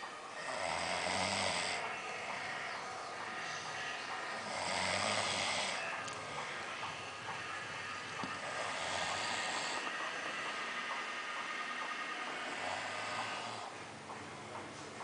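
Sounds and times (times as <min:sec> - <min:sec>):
man snoring: 0:00.4 - 0:02.7, 0:03.3 - 0:10.4, 0:12.4 - 0:13.8.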